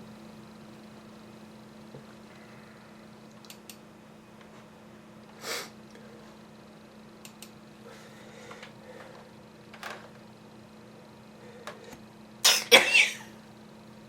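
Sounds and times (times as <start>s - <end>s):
steady low hum: 0.0s - 14.0s
sharp breath through nose: 5.4s - 5.8s
faint clicks: 7.2s - 7.6s.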